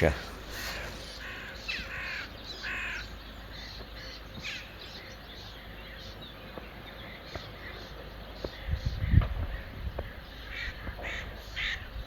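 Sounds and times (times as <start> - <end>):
crows cawing: 0.0 - 3.1.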